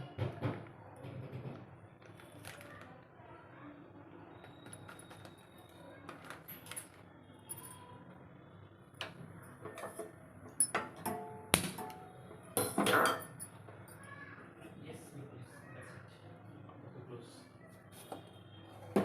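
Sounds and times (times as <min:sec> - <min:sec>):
utensils knocking and clinking: 0:09.0 - 0:13.9.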